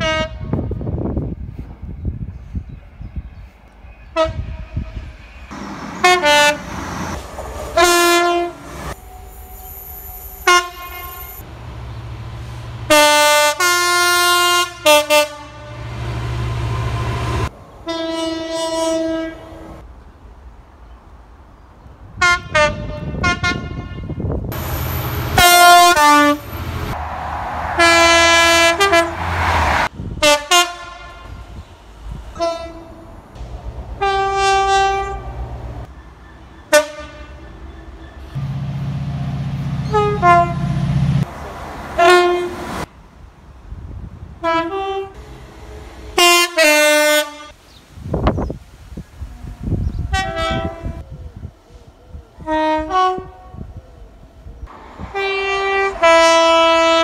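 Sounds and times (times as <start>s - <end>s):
train two-tone horns: 0.0s - 0.8s, 4.1s - 5.2s, 5.8s - 11.4s, 12.8s - 19.8s, 22.2s - 31.6s, 32.3s - 33.2s, 33.8s - 41.3s, 41.9s - 42.9s, 44.4s - 47.6s, 49.4s - 51.0s, 52.4s - 53.7s, 55.0s - 57.0s.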